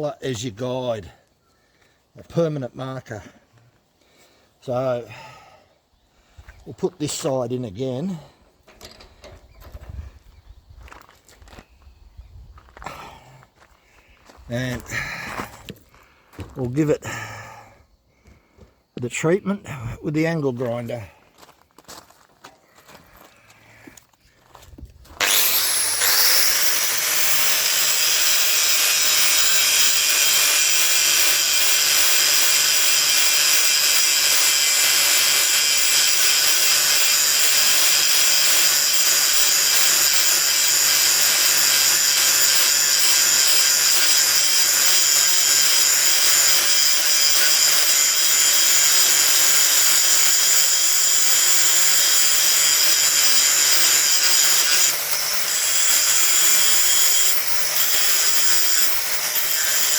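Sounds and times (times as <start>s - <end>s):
angle grinder grinding steel: 25.2s - 59.9s.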